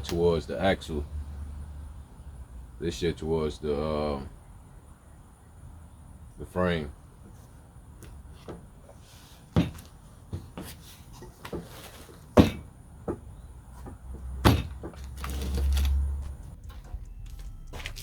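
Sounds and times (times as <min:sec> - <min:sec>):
low rumble: 0:16.4 - 0:18.0.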